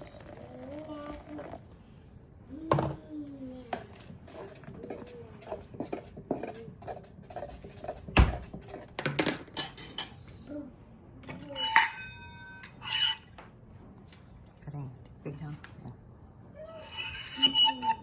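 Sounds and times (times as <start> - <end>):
dishes and utensils clinking: 4.3 - 10.3, 11.2 - 13.4, 16.8 - 18.0
struck metal ringing: 11.5 - 13.2.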